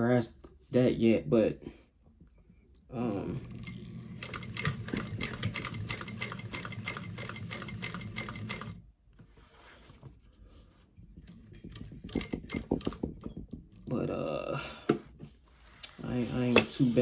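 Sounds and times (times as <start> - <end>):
sewing machine stitching: 3.3 - 8.8, 11.4 - 13.0.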